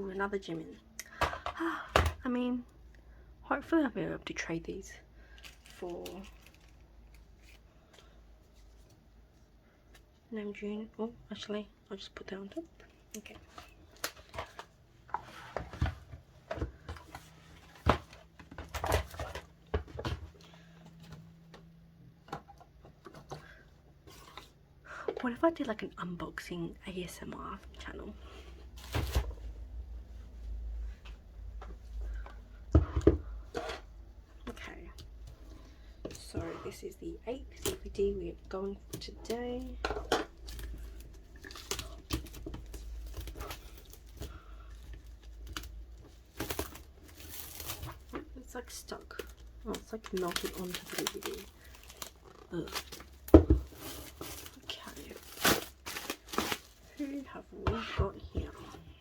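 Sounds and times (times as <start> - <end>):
plastic cases clacking: 13.2 - 21.7, 49.0 - 56.9.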